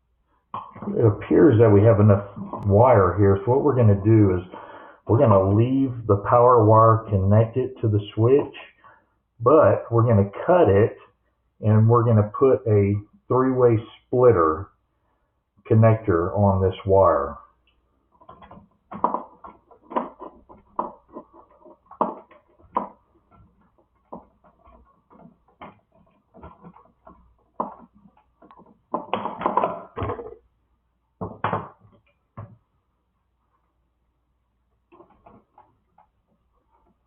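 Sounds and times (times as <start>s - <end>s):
electrical wire handling: 18.1s - 30.5s
hand tools clicking and tapping: 18.2s - 30.3s.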